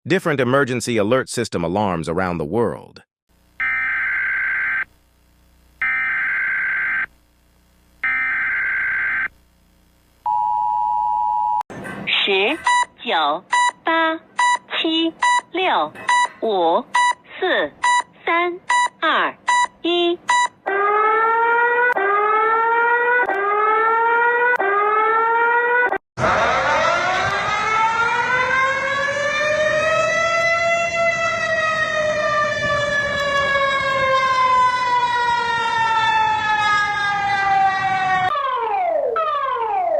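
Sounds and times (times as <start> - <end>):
noisier rising siren tone: 3.6 - 4.9, 5.8 - 7.1, 8.0 - 9.3, 20.6 - 39.9
rising electronic siren wail: 3.6 - 4.9, 5.8 - 7.1, 8.0 - 9.3, 20.6 - 39.9
digital data tone bursts: 8.0 - 9.3.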